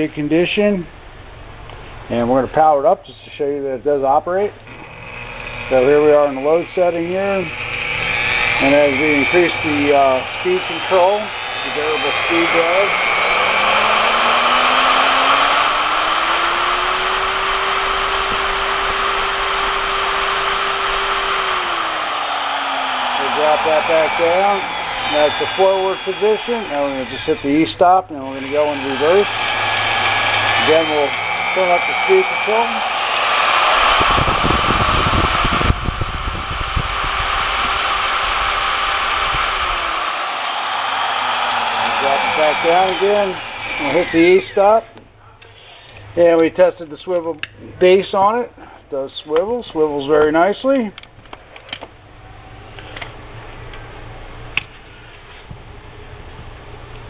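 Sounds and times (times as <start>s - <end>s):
drill press motor whining: 4.6s - 44.9s.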